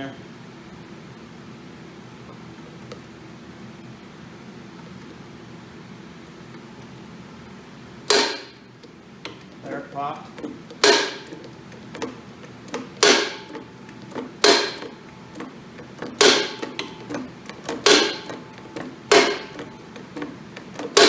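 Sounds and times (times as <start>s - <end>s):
metal-on-metal clanks: 8.1s - 8.6s, 9.3s - 21.0s.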